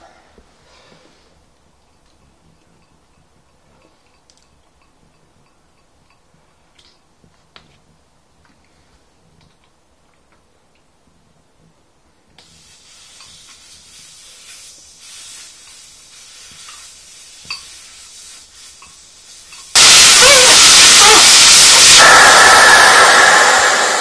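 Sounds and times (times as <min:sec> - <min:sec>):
air hissing out of tyre valve: 0:12.4 - 0:24.0.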